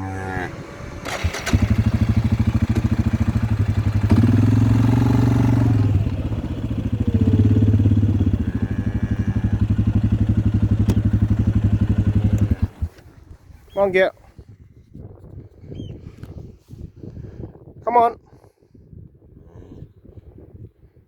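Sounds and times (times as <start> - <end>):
farm vehicle engine revving: 0.0 - 13.3.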